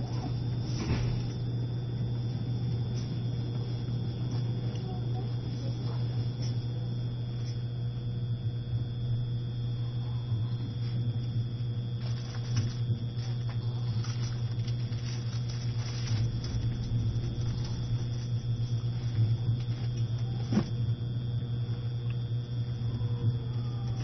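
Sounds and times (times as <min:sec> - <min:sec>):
faint constant whine: 0:00.0 - 0:24.0
train interior rumble: 0:13.2 - 0:20.8.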